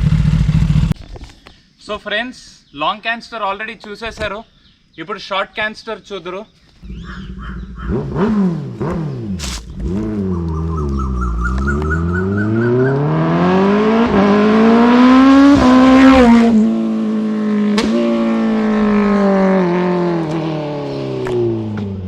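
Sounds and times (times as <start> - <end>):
motorcycle accelerating hard: 0.0 - 0.9, 6.8 - 22.0.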